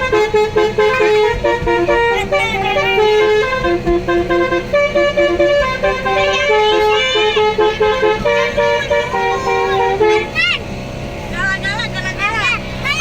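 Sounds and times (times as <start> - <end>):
horn playing a melody: 0.0 - 10.4.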